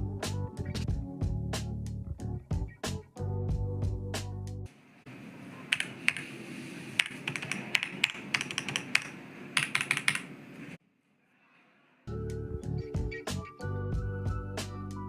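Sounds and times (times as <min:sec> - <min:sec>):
background music: 0:00.0 - 0:04.7, 0:12.1 - 0:15.0
mechanical keyboard typing: 0:05.7 - 0:06.3, 0:07.0 - 0:10.3.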